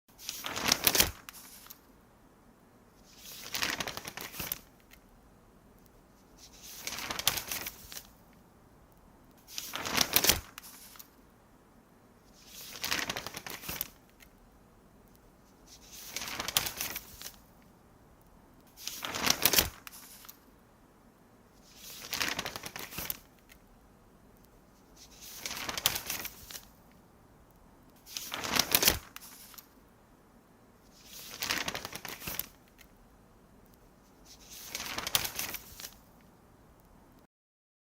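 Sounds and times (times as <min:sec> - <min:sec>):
newspaper pages turning: 0:00.2 - 0:01.9, 0:03.0 - 0:05.0, 0:06.3 - 0:08.4, 0:09.4 - 0:11.2, 0:12.4 - 0:14.3, 0:15.5 - 0:17.7, 0:18.8 - 0:20.4, 0:21.6 - 0:23.6, 0:24.8 - 0:26.9, 0:28.0 - 0:29.8, 0:30.9 - 0:32.9, 0:34.1 - 0:36.3.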